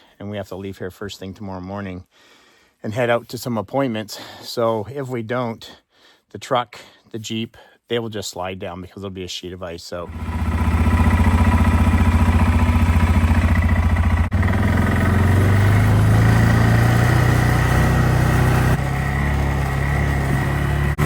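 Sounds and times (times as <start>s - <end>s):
vehicle engine running: 10.1s - 21.0s.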